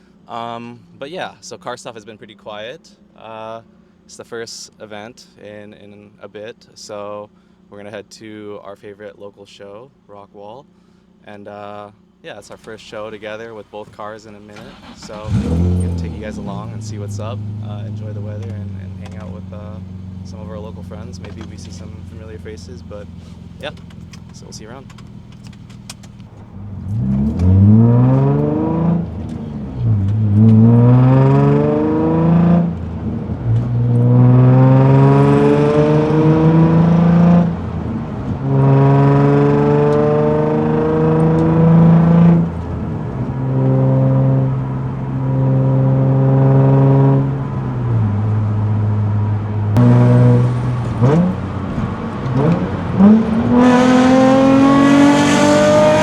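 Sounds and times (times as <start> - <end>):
car engine accelerating: 12.5 - 56.0.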